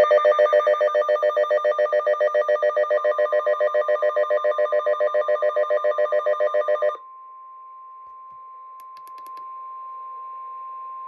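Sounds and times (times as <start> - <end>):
faint steady warning tone: 0.0 - 8.8.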